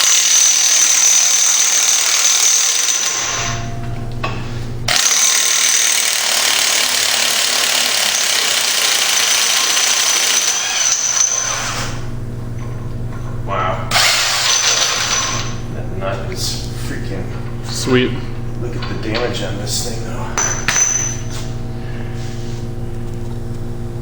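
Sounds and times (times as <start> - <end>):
impact wrench hammering: 0.0 - 12.0, 13.9 - 15.6, 20.4 - 21.6.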